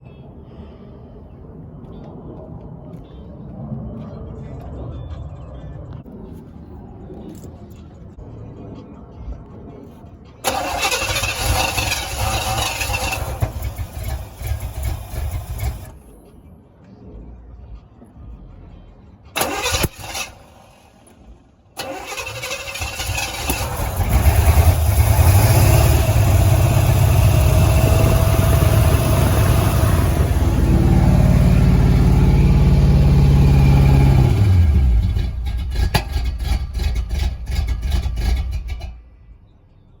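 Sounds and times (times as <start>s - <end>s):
starter cranking engine: 10.4s - 16.0s, 19.4s - 20.6s, 21.8s - 38.9s
car engine running: 10.5s - 16.0s, 22.8s - 39.0s.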